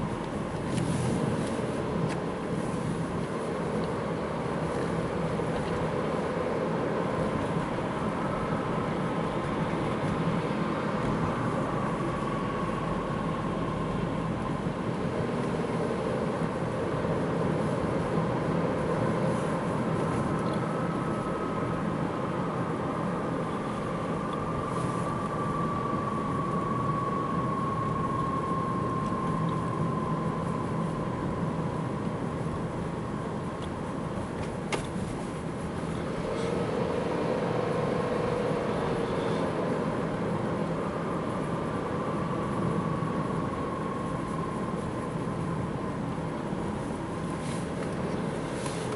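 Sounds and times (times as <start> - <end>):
car road noise: 0.0 - 48.9.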